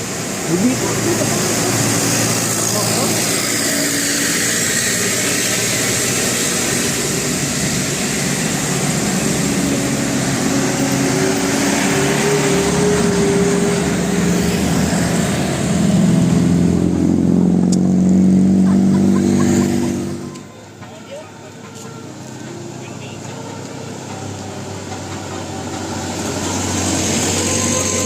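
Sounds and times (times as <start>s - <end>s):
road noise: 0.0s - 28.0s
vehicle engine: 0.0s - 28.0s.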